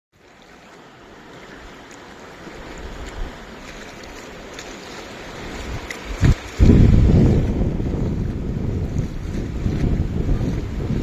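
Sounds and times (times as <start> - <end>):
sea waves washing on beach: 0.2 - 11.0
wind buffeting microphone: 2.6 - 4.2, 5.2 - 11.0.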